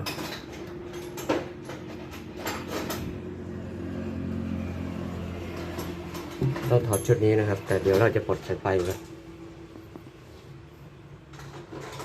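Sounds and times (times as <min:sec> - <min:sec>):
metallic clanks and rattles: 0:00.0 - 0:03.4, 0:05.0 - 0:09.2, 0:11.2 - 0:12.0.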